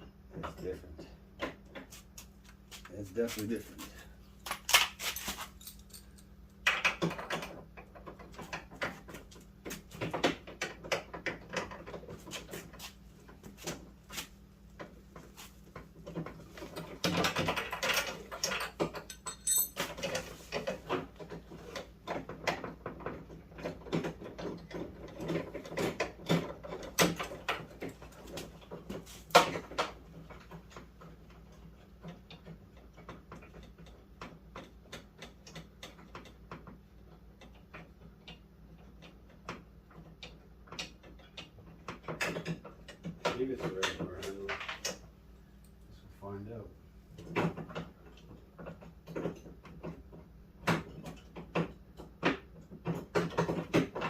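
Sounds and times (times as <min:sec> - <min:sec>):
metallic clicks and knocks: 0:15.7 - 0:45.1.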